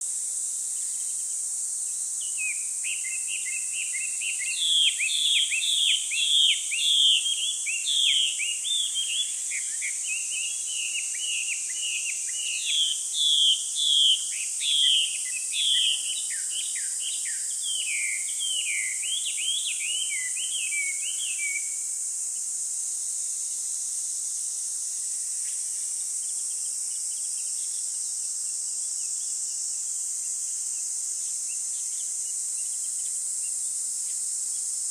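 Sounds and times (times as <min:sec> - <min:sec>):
bird chirping song: 0:02.2 - 0:21.8, 0:31.2 - 0:34.7.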